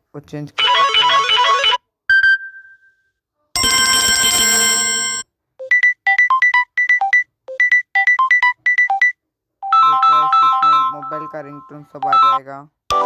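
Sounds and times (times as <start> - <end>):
repeating melody of high notes: 9.9 - 13.0.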